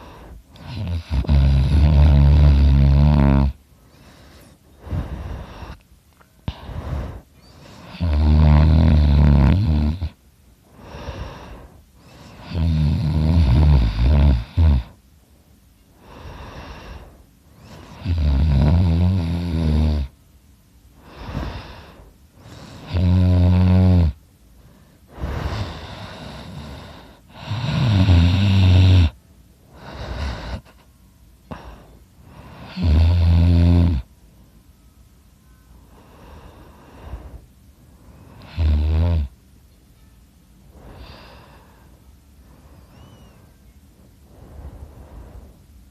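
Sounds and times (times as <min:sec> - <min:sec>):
loud low snores: 0:00.0 - 0:03.6, 0:06.5 - 0:10.2, 0:10.8 - 0:15.0, 0:16.0 - 0:20.1, 0:21.0 - 0:24.2, 0:25.1 - 0:29.2, 0:29.8 - 0:30.8, 0:31.5 - 0:34.1, 0:38.2 - 0:39.4
quiet breaths: 0:00.0 - 0:45.9.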